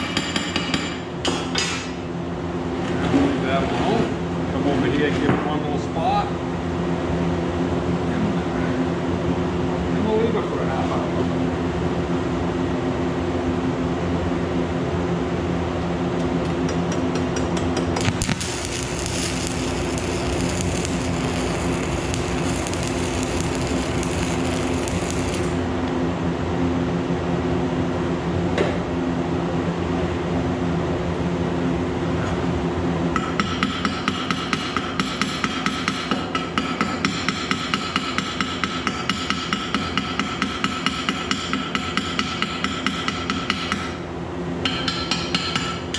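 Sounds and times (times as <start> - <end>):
welding arc crackling: 17.9 - 25.8
electrical hum: 17.9 - 26.3.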